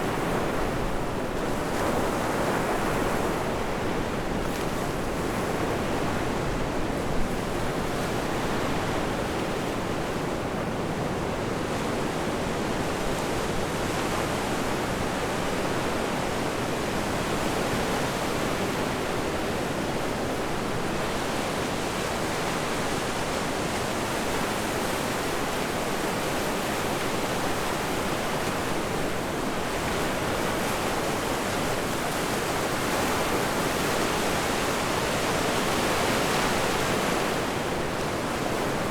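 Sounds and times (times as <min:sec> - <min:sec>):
ocean surf: 0:15.7 - 0:38.9.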